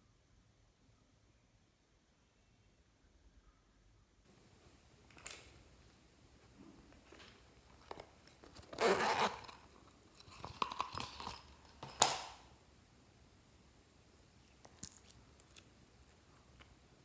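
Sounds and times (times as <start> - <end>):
small clicks and crackles: 14.4 - 16.8.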